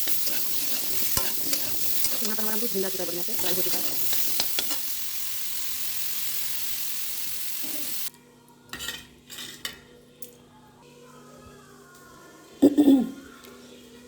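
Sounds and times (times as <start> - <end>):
food sizzling in a pan: 0.0 - 8.1.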